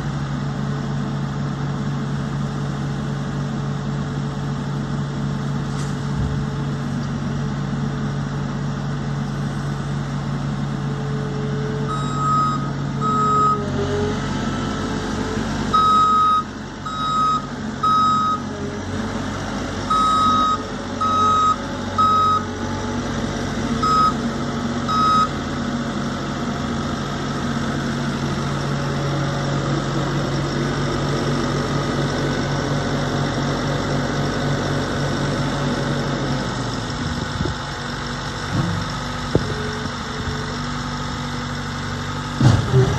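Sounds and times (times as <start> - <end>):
diesel engine running: 0.0 - 42.9
backup alarm beeps: 11.9 - 13.6, 15.8 - 18.4, 23.8 - 24.1.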